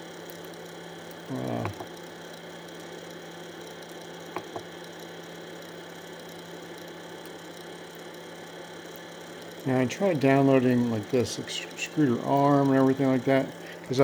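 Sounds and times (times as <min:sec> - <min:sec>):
printer fan whirring: 0:00.0 - 0:14.0.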